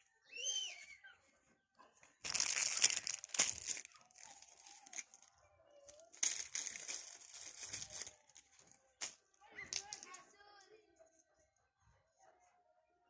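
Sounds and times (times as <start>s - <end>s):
rough rustling: 2.2s - 5.2s, 5.9s - 9.2s.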